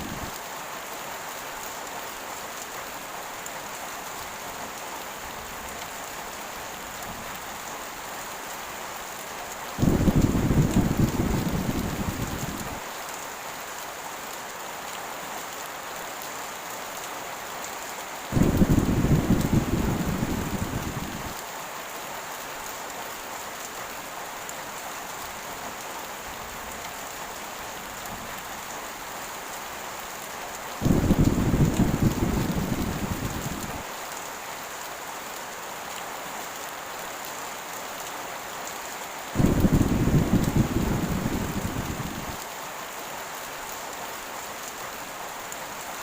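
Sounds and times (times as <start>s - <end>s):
heavy rain falling: 0.0s - 46.0s
deep thunder rolls: 9.8s - 12.8s, 18.4s - 21.4s, 30.8s - 33.8s, 39.4s - 42.4s.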